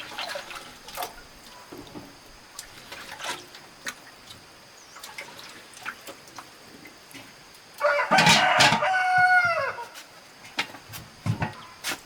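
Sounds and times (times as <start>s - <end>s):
water splashing and dripping: 0.0s - 7.9s.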